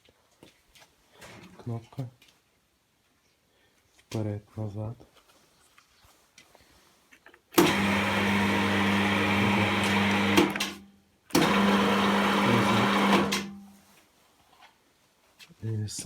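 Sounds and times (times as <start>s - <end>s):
electric motor and gearboxes running: 7.6s - 10.8s, 11.4s - 13.5s.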